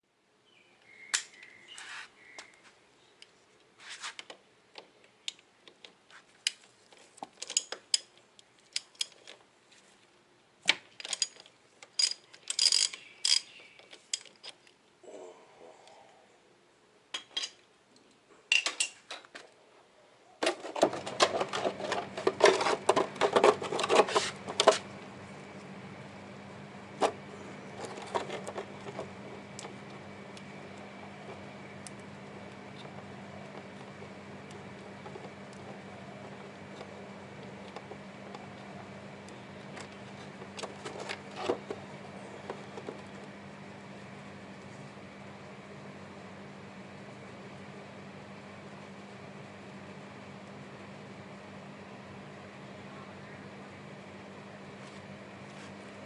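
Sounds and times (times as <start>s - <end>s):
steady hum with high whine: 7.2s - 56.0s
metal tools clinking: 11.0s - 14.7s.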